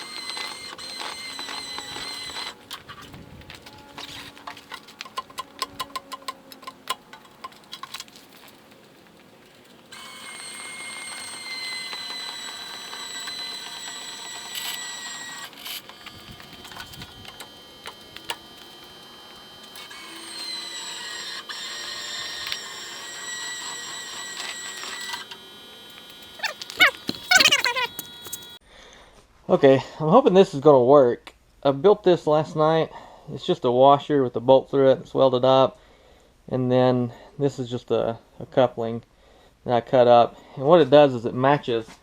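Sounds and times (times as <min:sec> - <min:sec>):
electric winch motor whining: 0:00.0 - 0:28.6.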